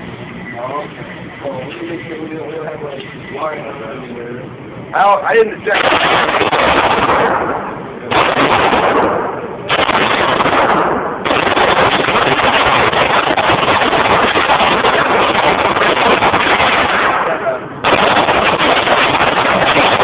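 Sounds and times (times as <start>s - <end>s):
pistol fired rapidly: 5.8s - 20.0s.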